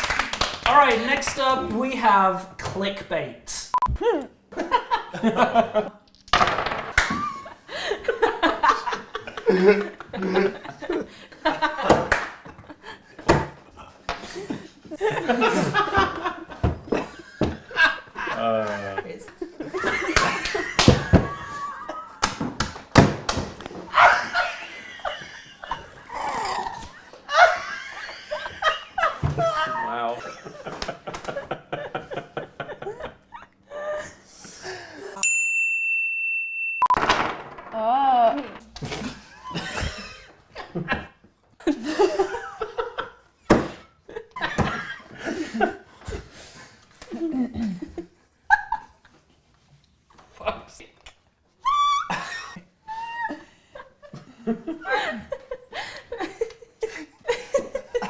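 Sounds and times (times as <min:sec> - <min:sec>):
people laughing wheezily: 0:07.2 - 0:11.8, 0:19.6 - 0:22.3, 0:23.9 - 0:35.2, 0:51.6 - 0:58.0
hand slapping a table: 0:22.2 - 0:23.6.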